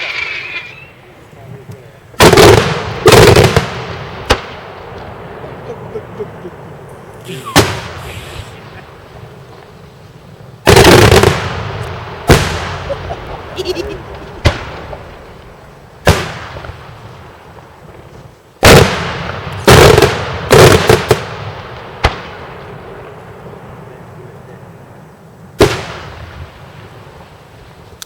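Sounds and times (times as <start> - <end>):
fireworks bursting with echoing bangs: 0.0 - 28.0.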